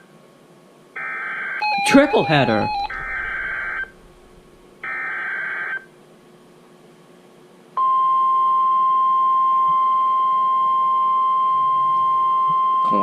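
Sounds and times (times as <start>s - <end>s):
digital data squawk: 1.6s - 4.3s
steady alarm tone: 1.6s - 5.1s
quiet hiss: 1.9s - 4.9s.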